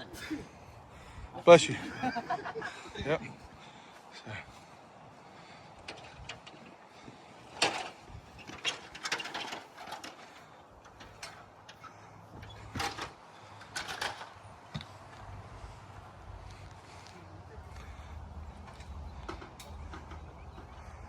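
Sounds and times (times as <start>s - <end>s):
metal tent tubes clanking: 5.7s - 14.5s, 18.1s - 21.0s.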